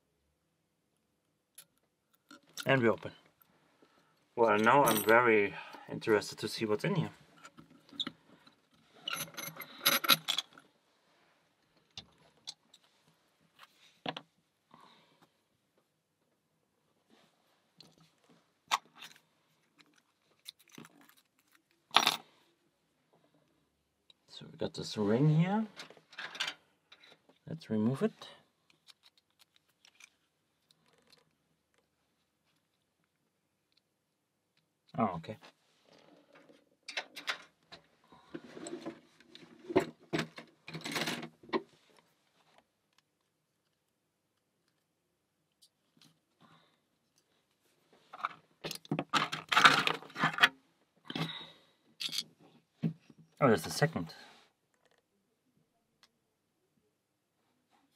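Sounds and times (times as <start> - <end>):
lock parts clicking and rattling: 7.4 - 10.6, 18.7 - 22.2, 25.8 - 27.2, 28.7 - 31.3, 36.3 - 37.6, 39.6 - 41.3, 48.2 - 51.3, 52.0 - 52.3
lock parts scraping rattle: 9.0 - 10.6, 39.8 - 41.3, 48.2 - 50.6, 52.0 - 52.3.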